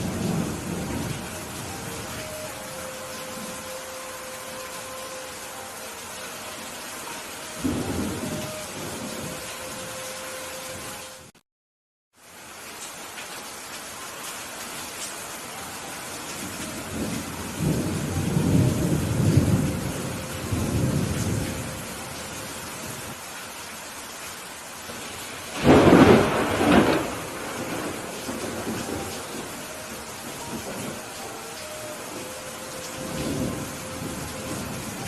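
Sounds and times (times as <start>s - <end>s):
low rolling thunder: 0.0s - 3.7s, 7.6s - 9.8s, 16.7s - 22.2s, 24.9s - 31.2s, 32.1s - 35.0s
steady rain hiss: 0.0s - 11.4s, 12.1s - 35.0s
sharp thunderclap: 25.6s - 29.0s.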